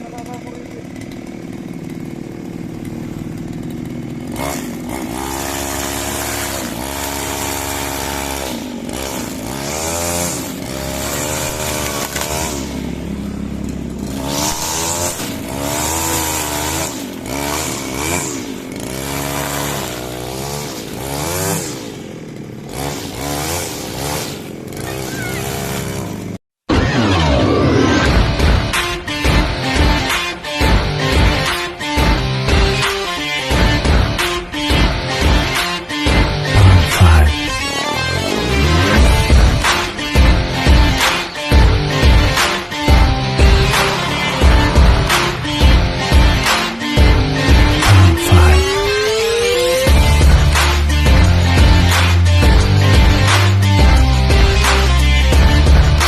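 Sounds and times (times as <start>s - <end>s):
lawn mower engine revving: 0.0s - 56.0s.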